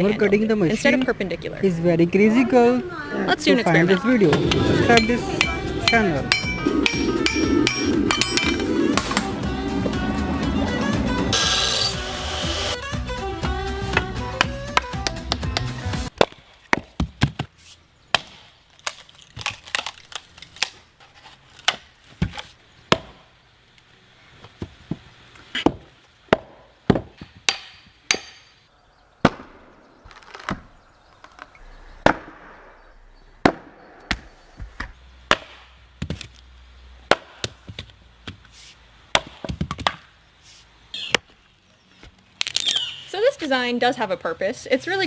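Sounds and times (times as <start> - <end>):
axe chopping firewood: 13.9 - 17.5, 18.1 - 20.8, 21.6 - 23.3, 24.6 - 28.5, 35.3 - 36.4, 37.1 - 38.4, 39.1 - 40.1.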